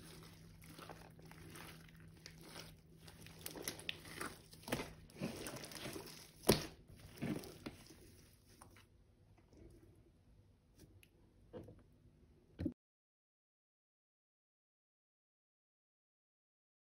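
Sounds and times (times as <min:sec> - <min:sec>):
slime squishing and popping: 0:00.0 - 0:07.9.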